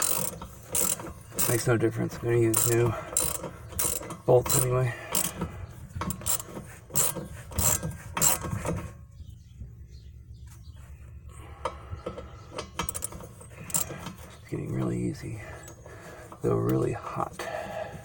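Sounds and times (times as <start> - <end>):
ratchet wrench clicking: 0.0 - 1.7, 2.4 - 5.4, 6.0 - 8.5, 12.8 - 13.9.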